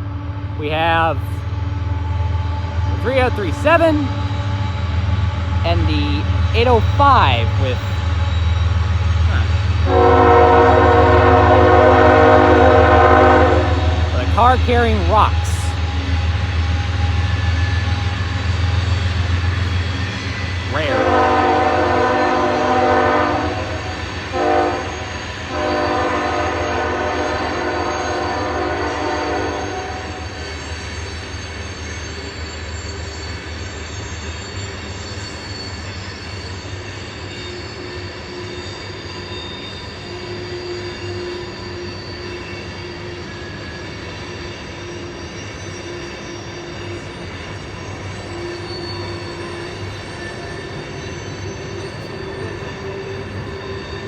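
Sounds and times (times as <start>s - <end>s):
locomotive horn blowing: 9.8s - 15.7s, 20.7s - 30.2s
faint wheel squeal: 30.2s - 54.0s.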